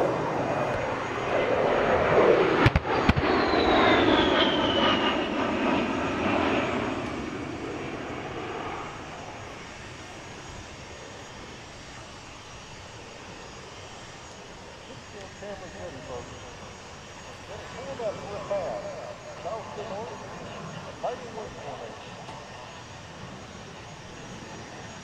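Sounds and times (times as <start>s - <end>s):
propeller plane passing overhead: 0.0s - 25.0s.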